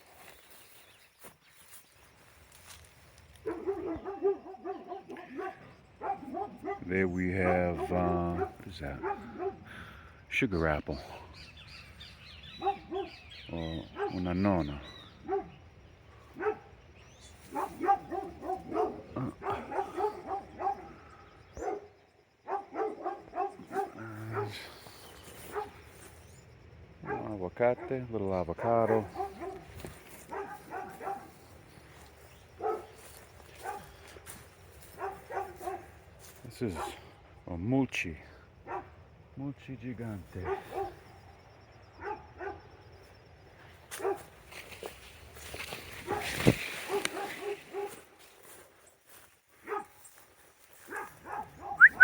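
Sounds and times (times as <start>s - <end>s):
dog yapping: 3.4s - 9.6s, 12.6s - 13.1s, 17.5s - 21.0s, 30.3s - 31.3s, 32.6s - 32.9s, 50.9s - 52.0s.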